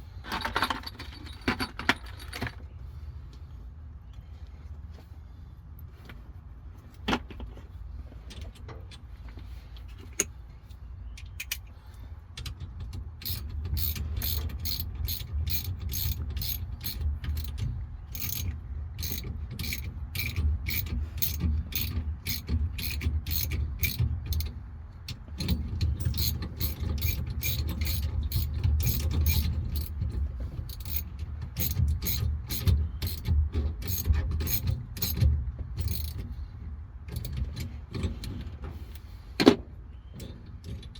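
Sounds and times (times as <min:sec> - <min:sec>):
ratchet wrench clicking: 0:13.2 - 0:24.5, 0:25.4 - 0:30.0, 0:30.7 - 0:35.2, 0:35.8 - 0:36.2.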